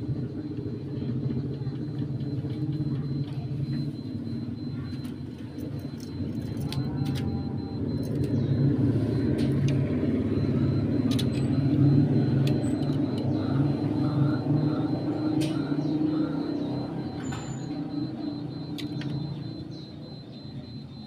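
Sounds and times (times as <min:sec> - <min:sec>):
low mechanical rumble: 0:00.0 - 0:21.0
sharp clicks: 0:18.6 - 0:19.5.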